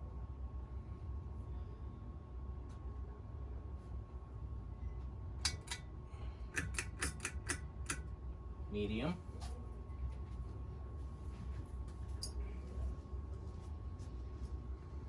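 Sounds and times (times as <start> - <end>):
ceiling fan humming: 0.0 - 15.0
pull-chain switch clicks: 6.6 - 8.0.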